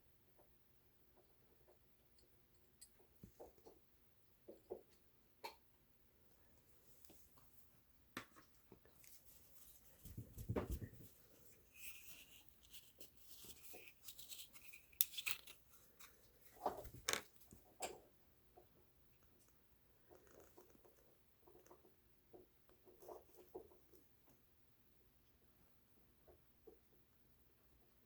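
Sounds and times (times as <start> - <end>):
rustling: 8.8 - 17.6.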